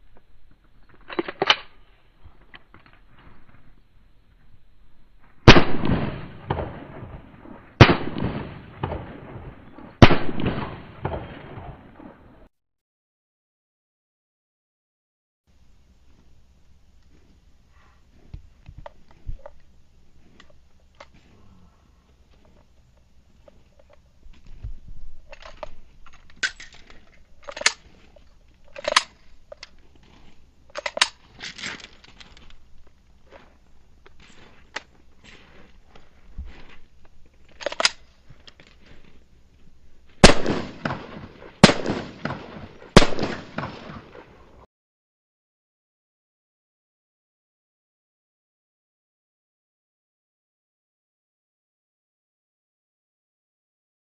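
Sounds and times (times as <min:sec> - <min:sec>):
handgun shots with echo: 0:05.5 - 0:07.2, 0:07.8 - 0:12.1, 0:40.2 - 0:44.2
rustling and scraping: 0:16.0 - 0:40.2.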